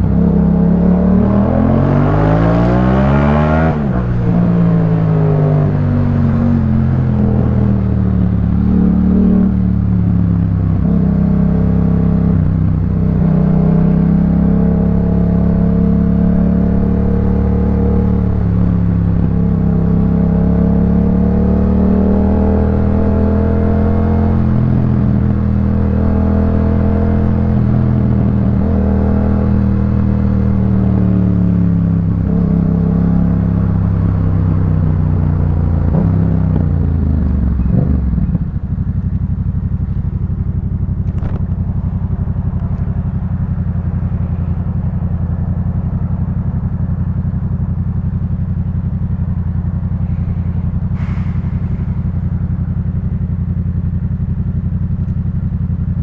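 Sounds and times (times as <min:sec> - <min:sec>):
motorcycle engine slowing to idle: 0:35.2 - 0:56.0.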